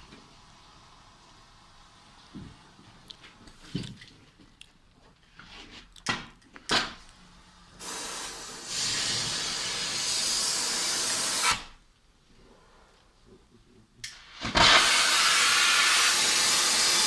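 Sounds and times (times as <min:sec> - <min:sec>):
gas torch hissing: 0:07.4 - 0:11.8, 0:14.0 - 0:17.0.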